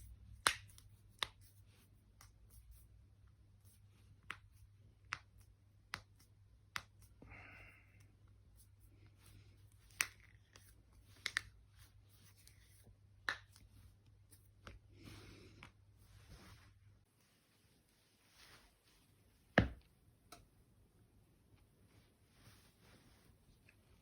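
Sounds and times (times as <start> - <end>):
hands rustling clothing: 8.4 - 19.8, 21.6 - 24.0.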